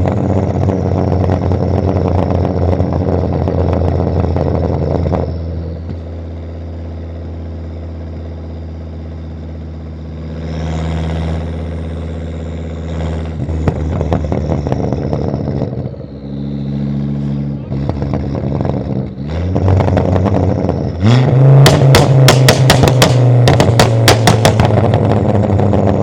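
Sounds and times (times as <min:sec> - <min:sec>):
engine exhaust popping and crackling: 0:00.0 - 0:26.0
exhaust drone: 0:00.0 - 0:26.0
turbo whistle: 0:12.8 - 0:18.4.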